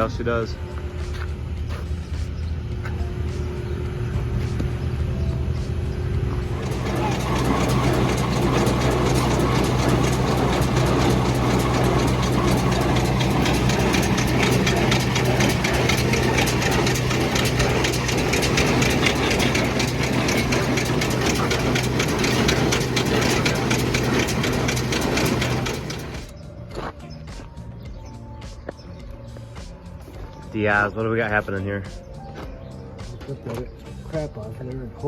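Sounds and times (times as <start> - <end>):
tractor engine running: 0.0 - 26.4
hay baler baling: 2.8 - 26.3.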